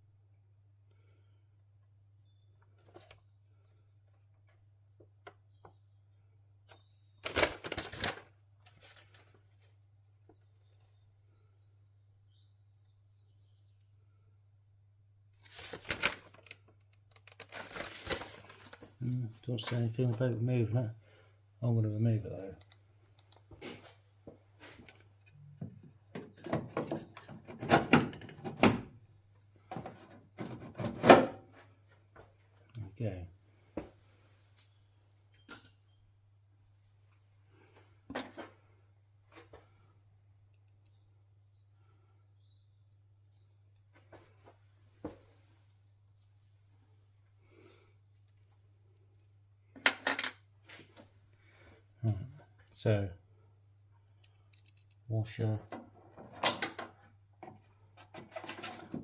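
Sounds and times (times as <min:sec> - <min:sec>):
clicks knocks and scrapes: 0:55.7 - 0:59.0.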